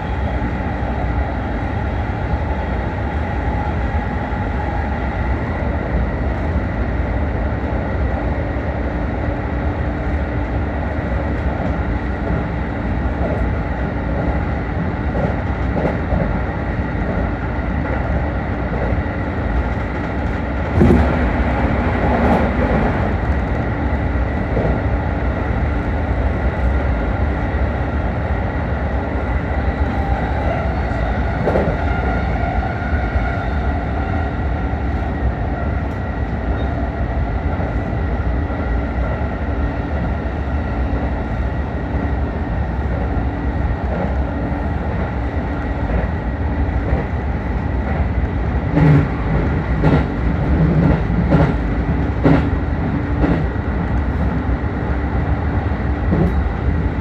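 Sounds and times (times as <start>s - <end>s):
train wheels rumbling on rail: 0.0s - 57.0s.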